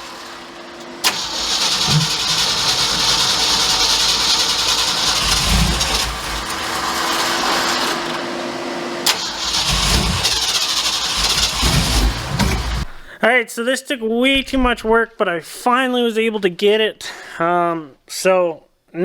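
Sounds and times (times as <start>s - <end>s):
truck engine running: 0.9s - 13.1s
loud hiss: 1.0s - 8.1s, 9.1s - 13.1s.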